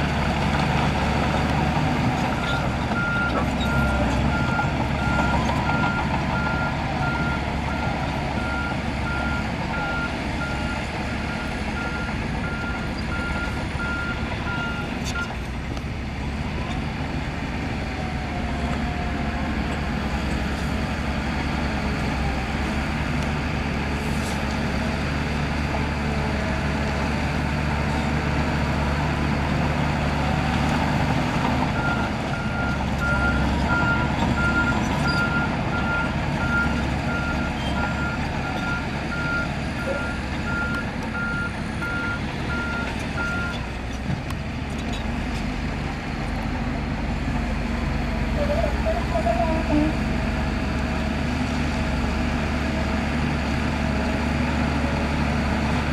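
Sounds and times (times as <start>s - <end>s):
diesel engine running under load: 0.0s - 55.9s
reversing alarm beeping: 31.8s - 43.6s.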